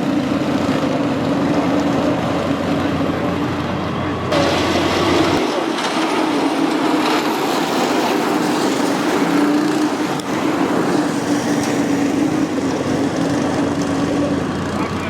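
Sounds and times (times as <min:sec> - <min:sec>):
small engine running: 0:00.0 - 0:15.0.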